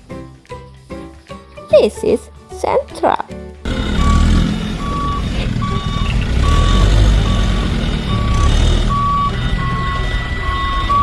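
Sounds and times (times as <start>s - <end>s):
reversing alarm beeping: 3.8s - 11.0s.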